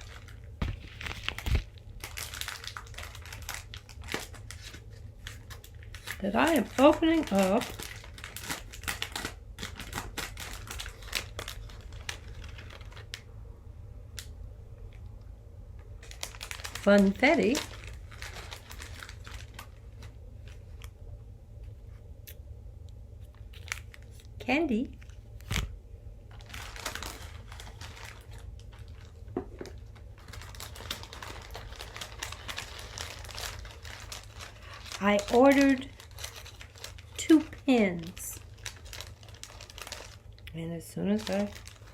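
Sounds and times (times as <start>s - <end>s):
package packaging crackling: 0.0s - 13.3s, 15.8s - 21.0s, 23.2s - 41.9s.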